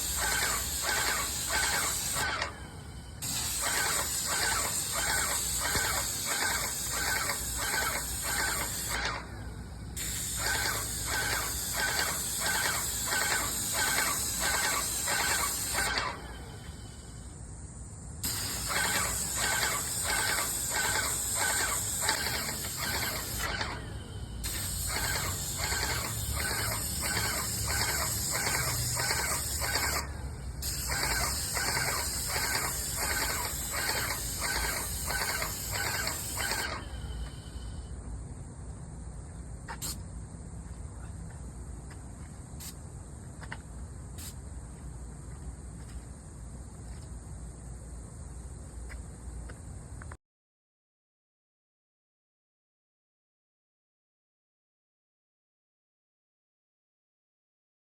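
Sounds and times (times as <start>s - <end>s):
paint sprayer hissing: 0.0s - 2.6s, 3.2s - 9.4s, 10.0s - 16.9s, 18.2s - 37.8s, 39.7s - 40.0s, 44.1s - 44.4s.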